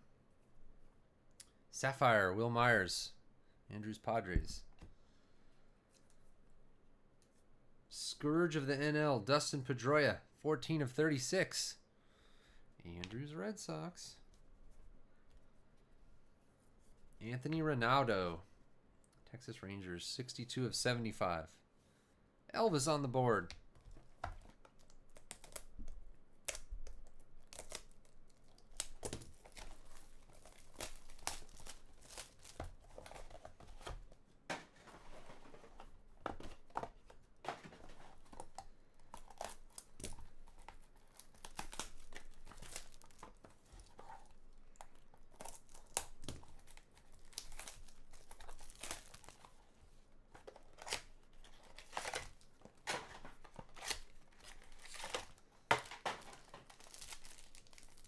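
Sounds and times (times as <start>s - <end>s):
card pack packaging tearing: 26.4s - 34.0s, 37.5s - 49.6s, 50.4s - 58.0s.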